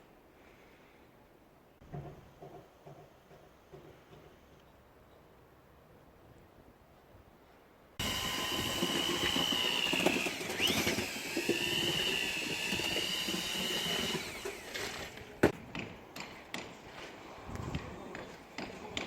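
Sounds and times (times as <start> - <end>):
small motor whining: 8.0 - 15.4.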